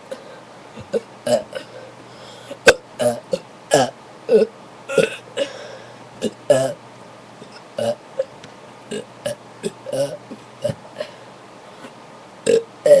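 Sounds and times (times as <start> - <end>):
person burping: 0.8 - 1.8, 2.6 - 5.6, 6.2 - 6.8, 7.8 - 8.3, 8.9 - 11.2, 12.5 - 13.0.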